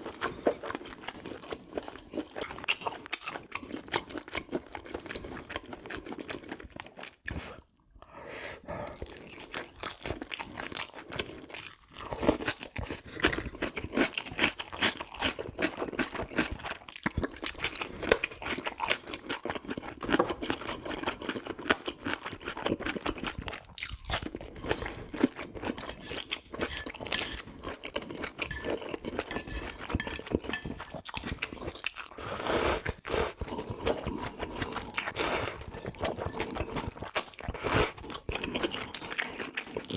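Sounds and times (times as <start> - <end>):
crunchy food chewing: 8.9 - 39.9.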